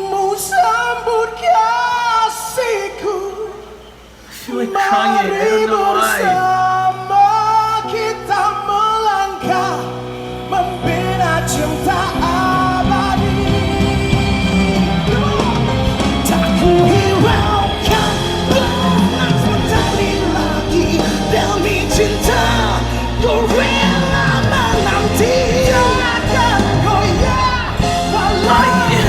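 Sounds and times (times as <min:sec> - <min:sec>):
man singing pop ballad: 0:04.3 - 0:06.6, 0:28.1 - 0:29.0
band accompaniment: 0:12.8 - 0:29.0.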